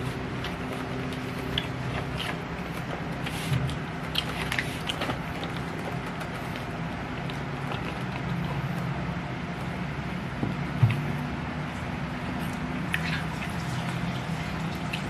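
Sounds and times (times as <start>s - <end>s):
close chewing and mouth sounds: 0.0s - 15.0s
steady low hum: 0.0s - 15.0s.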